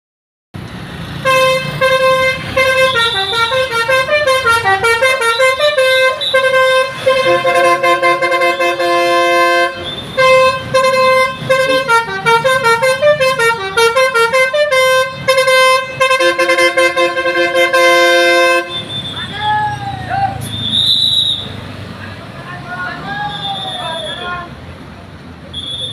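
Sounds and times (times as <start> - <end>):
multi-tone bus horn melody: 1.1 - 19.3.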